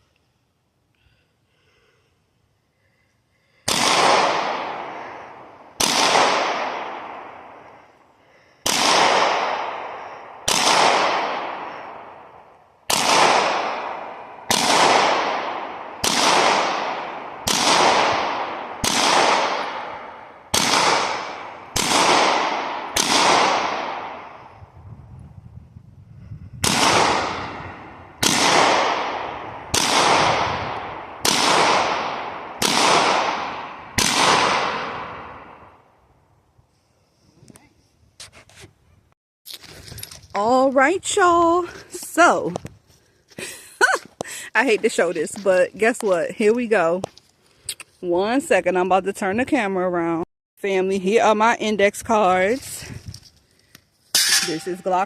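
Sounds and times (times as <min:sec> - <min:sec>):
pistol shots echoing: 0:03.7 - 0:07.8, 0:08.6 - 0:24.6, 0:26.6 - 0:35.8, 0:54.2 - 0:55.0.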